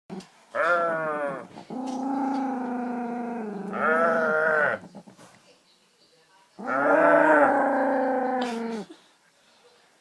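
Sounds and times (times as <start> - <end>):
dog growling: 0.1 - 5.2, 6.6 - 9.0.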